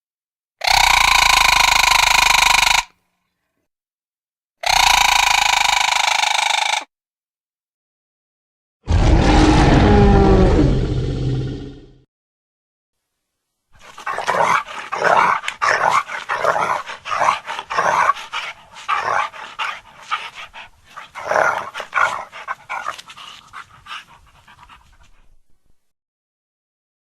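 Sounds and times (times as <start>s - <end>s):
rhythmic breathy panting: 13.8s - 25.8s.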